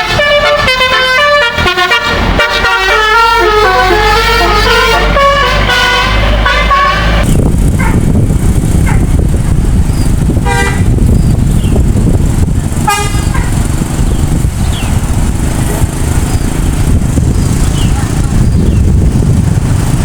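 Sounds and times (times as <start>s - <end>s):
bus air horn blasts: 0.0s - 8.0s, 10.4s - 11.0s, 12.8s - 13.6s
loud low rumble: 0.0s - 20.0s.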